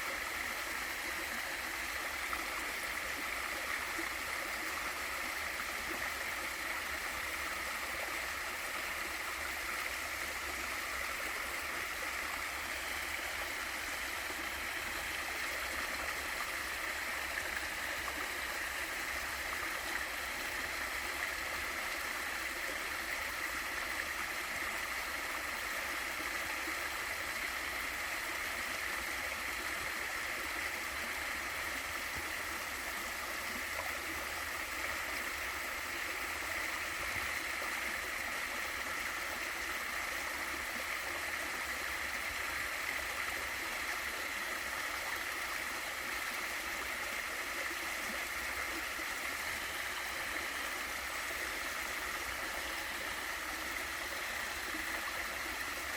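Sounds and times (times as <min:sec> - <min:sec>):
small waterfall rushing: 0:00.0 - 0:55.9.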